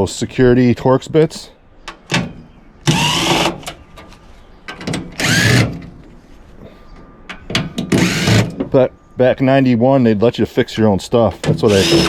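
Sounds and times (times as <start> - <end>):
cordless drill whining: 2.9 - 3.6, 5.2 - 5.7, 8.0 - 8.4, 11.7 - 12.0.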